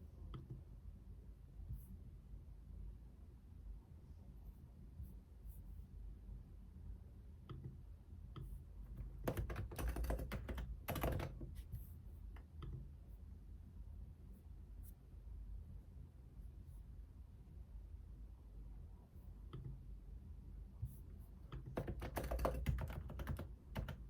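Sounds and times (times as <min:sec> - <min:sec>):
typing on computer keyboard: 0:09.0 - 0:11.6, 0:21.5 - 0:24.0.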